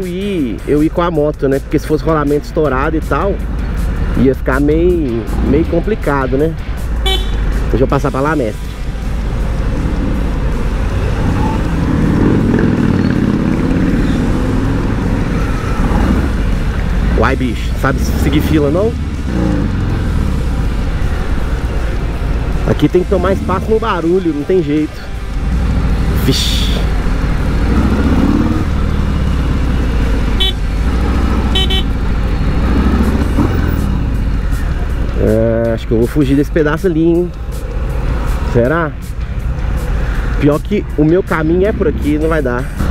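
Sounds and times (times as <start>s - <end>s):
vehicle horn beeps: 7.0s - 7.4s, 30.3s - 30.7s, 31.5s - 32.0s
motorcycle engine running: 8.8s - 35.2s.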